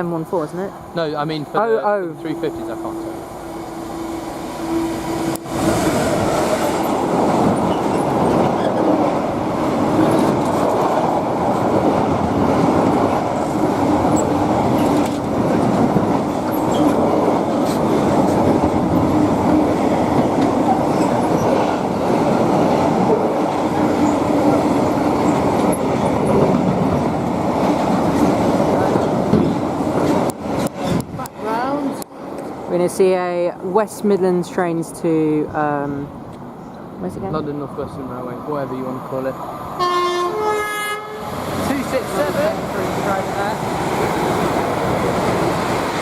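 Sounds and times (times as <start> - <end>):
freight train passing: 0.0 - 46.0
wheels clacking over rail joints: 5.2 - 32.6.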